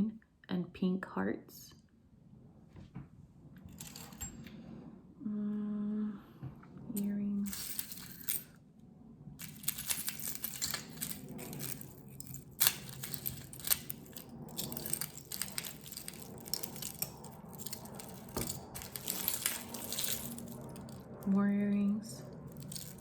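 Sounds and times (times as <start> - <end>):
jewelry wrapping rustling: 3.7 - 4.5, 7.0 - 8.5, 9.4 - 23.0.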